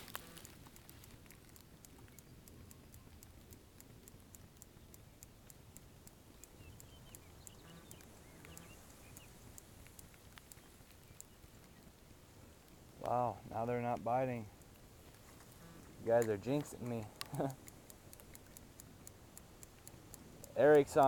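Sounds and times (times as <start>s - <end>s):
fishing reel ticking: 0.0s - 11.8s, 13.0s - 21.0s
faint bird chirps: 4.6s - 12.0s.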